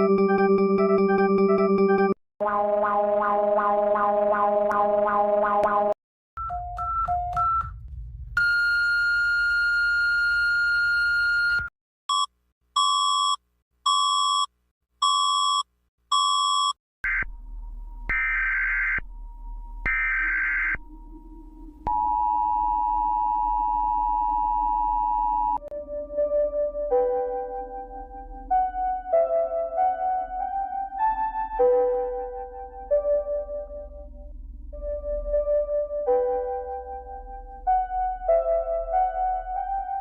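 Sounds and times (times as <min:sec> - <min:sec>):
low hum: 0:20.8 - 0:24.9.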